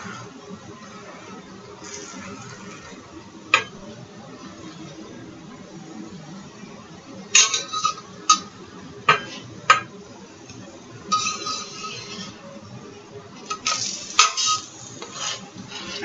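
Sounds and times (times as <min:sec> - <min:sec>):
utensil scraping pan: 0:00.9 - 0:03.0, 0:11.1 - 0:12.4, 0:13.4 - 0:16.0.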